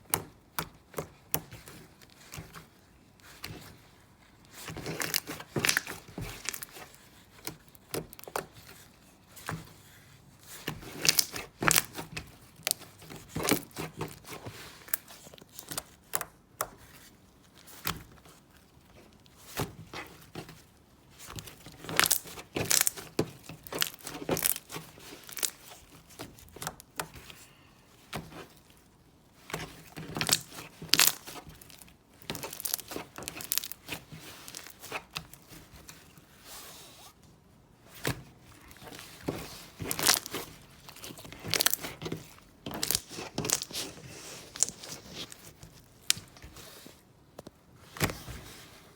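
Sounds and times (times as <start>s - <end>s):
slime crackling and popping: 4.8s - 6.9s, 10.9s - 16.3s, 21.4s - 27.1s, 29.3s - 35.3s, 39.7s - 46.5s.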